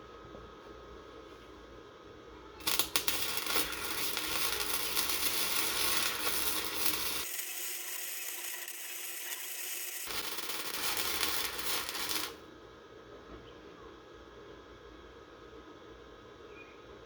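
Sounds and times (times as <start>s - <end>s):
welding arc crackling and hissing: 2.6s - 12.4s.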